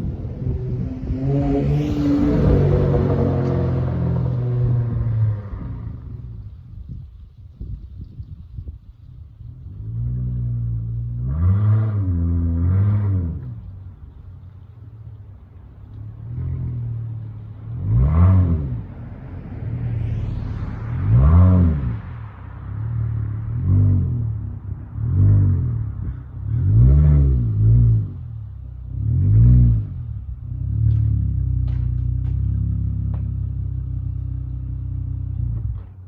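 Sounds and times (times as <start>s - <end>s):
car engine revving: 0.0s - 6.3s, 15.8s - 35.9s.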